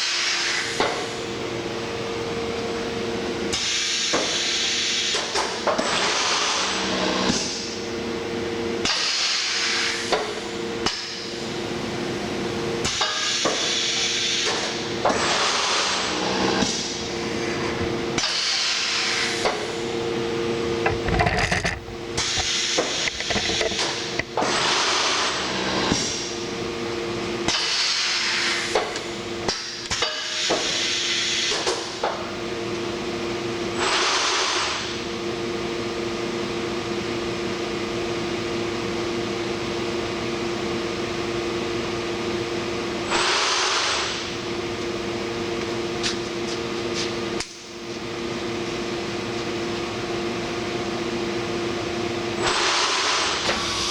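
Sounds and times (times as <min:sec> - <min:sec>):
pneumatic air hiss bursts: 0:00.0 - 0:01.3, 0:03.5 - 0:07.8, 0:08.8 - 0:11.3, 0:12.8 - 0:17.6, 0:18.2 - 0:19.8, 0:22.2 - 0:26.3, 0:27.5 - 0:32.0, 0:33.8 - 0:35.0, 0:43.1 - 0:44.3, 0:52.4 - 0:53.9
two-tone machine hum: 0:00.0 - 0:53.9
mechanical clunks and knocks: 0:20.8 - 0:24.5.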